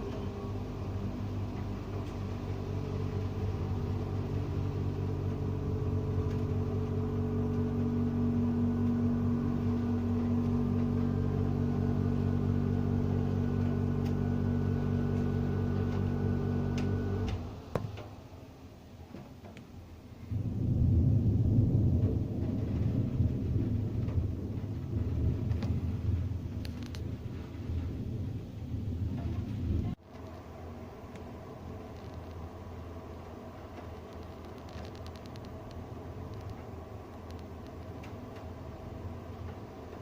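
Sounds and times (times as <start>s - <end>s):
motor droning hum: 0.0s - 17.6s.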